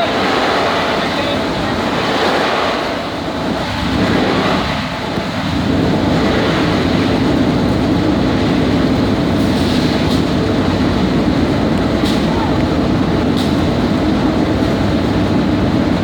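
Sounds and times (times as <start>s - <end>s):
grinder machine rumbling: 0.0s - 16.0s.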